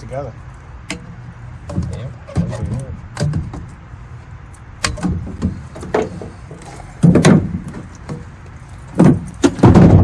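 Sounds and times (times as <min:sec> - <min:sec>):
plastic pipe knocking and clattering: 0:09.0 - 0:10.0.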